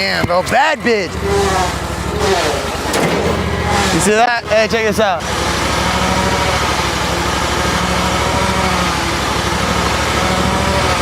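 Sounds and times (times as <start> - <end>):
lawn mower engine running: 0.9 - 11.0.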